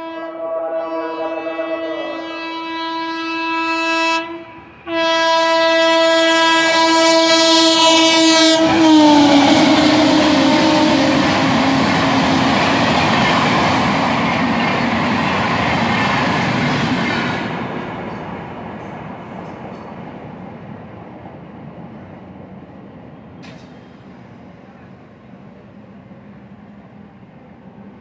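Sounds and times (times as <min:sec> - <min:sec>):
train coaches rushing past: 0:00.0 - 0:03.8, 0:06.2 - 0:28.0
locomotive horn blast: 0:00.0 - 0:12.4.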